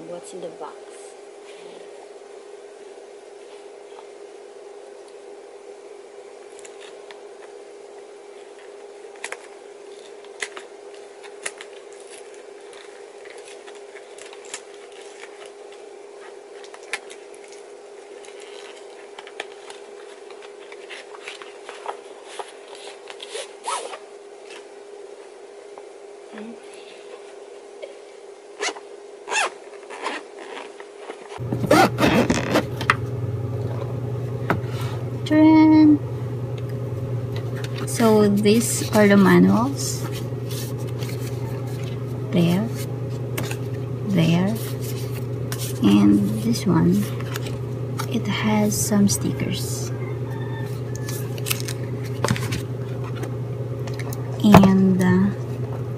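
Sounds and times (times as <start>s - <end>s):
steady low hum: 0.0s - 55.9s
plastic crinkling: 8.4s - 24.6s, 49.9s - 54.3s
packaging scraping and rustling: 8.4s - 24.7s, 40.0s - 43.8s, 44.5s - 45.8s, 49.9s - 54.1s.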